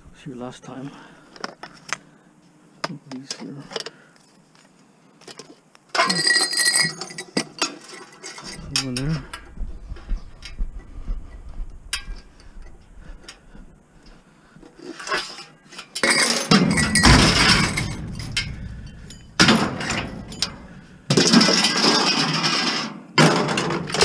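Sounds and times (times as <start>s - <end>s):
scrap metal clattering and scraping: 5.3s - 9.5s, 14.7s - 24.0s.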